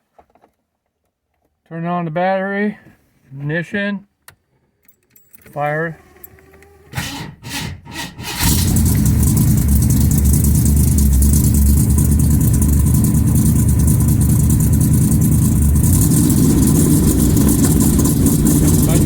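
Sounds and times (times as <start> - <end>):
car engine starting: 5.7 - 19.0.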